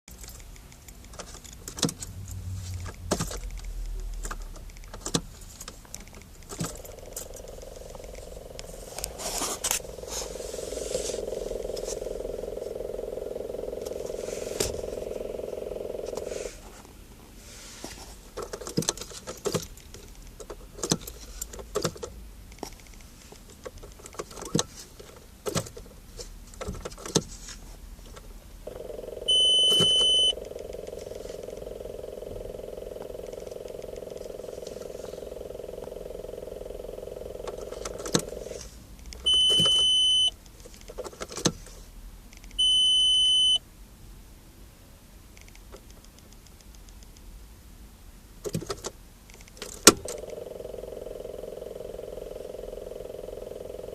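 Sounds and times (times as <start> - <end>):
dashboard buzzing vibration: 1.6 - 16.6, 28.6 - 40.3, 49.9 - 53.9.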